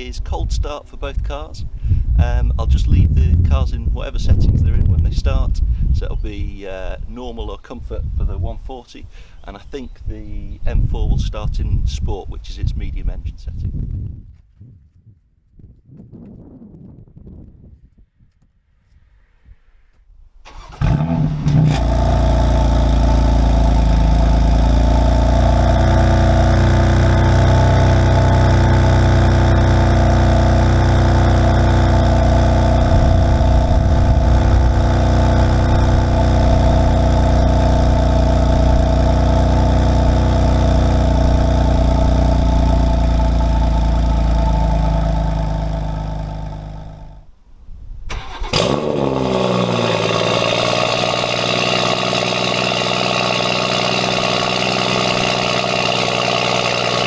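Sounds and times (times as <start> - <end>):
car engine cold idle: 20.5 - 47.2, 48.5 - 57.0.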